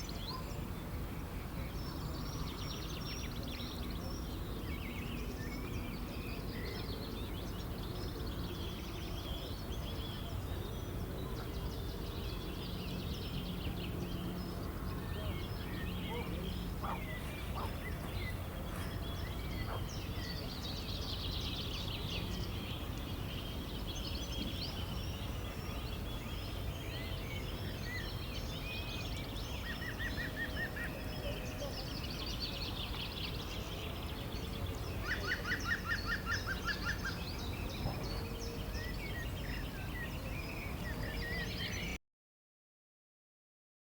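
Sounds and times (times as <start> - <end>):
birds calling and chirping: 11.3 - 42.0.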